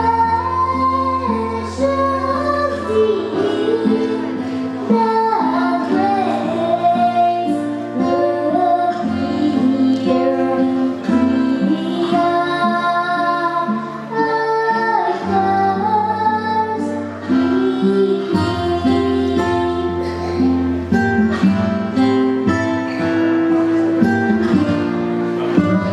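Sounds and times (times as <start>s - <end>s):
woman singing: 0.0s - 20.4s
plucked guitar: 0.0s - 25.9s.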